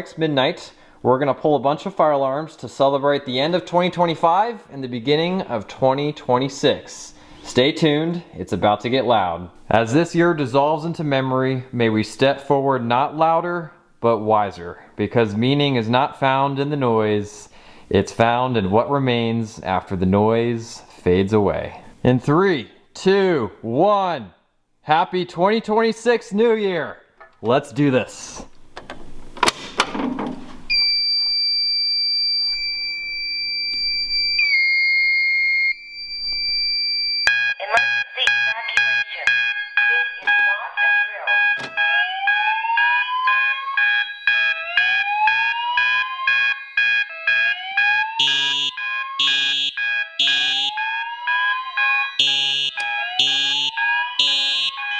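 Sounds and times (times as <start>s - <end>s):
fire alarm high electronic tone: 30.7s - 54.9s
rapidly pulsing multi-tone alarm: 30.7s - 54.9s.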